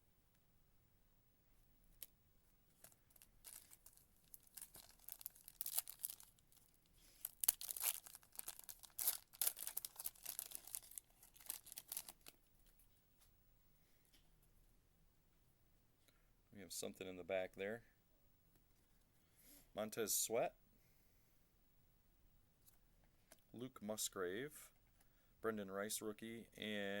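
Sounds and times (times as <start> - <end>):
foil wrapper tearing and crinkling: 2.8 - 12.3.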